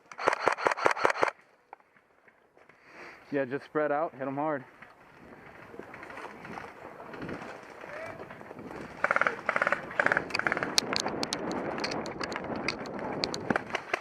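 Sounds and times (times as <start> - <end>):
sharp clicks: 0.0 - 1.8, 9.5 - 14.0
airsoft guns firing bursts: 0.1 - 1.3
rustling: 4.6 - 9.8.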